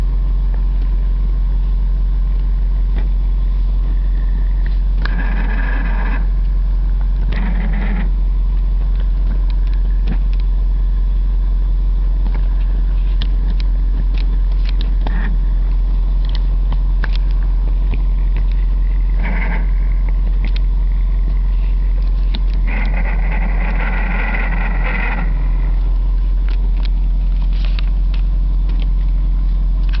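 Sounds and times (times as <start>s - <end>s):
car engine droning: 0.0s - 30.0s
rough noise bursts: 0.0s - 30.0s
clicks: 12.2s - 21.4s.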